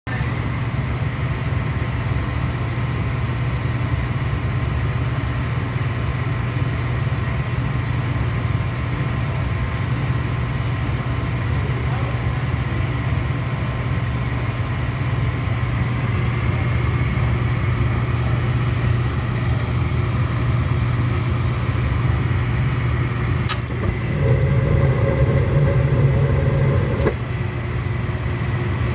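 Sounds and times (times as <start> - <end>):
furnace humming: 18.4 - 27.5
sharp click: 23.5 - 27.2.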